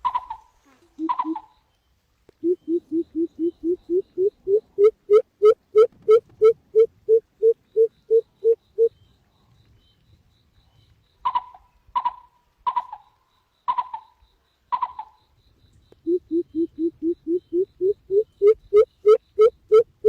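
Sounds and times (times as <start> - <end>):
bird repeating low notes: 0.0 - 1.5, 2.4 - 8.9, 16.0 - 20.0
sharp bird calls: 0.0 - 1.7, 2.4 - 8.9.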